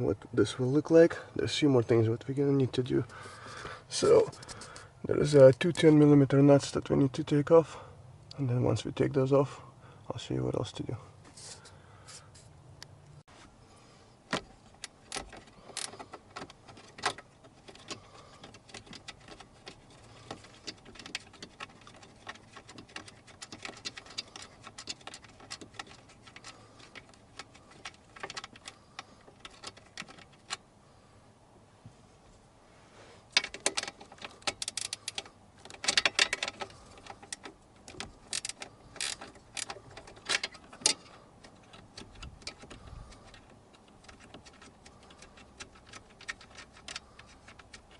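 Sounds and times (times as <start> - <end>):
ratchet wrench clicking: 38.3 - 41.0.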